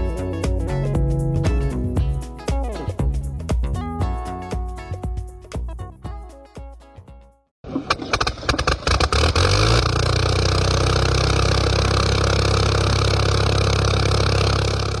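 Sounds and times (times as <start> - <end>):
engine starting and running: 7.6 - 15.0.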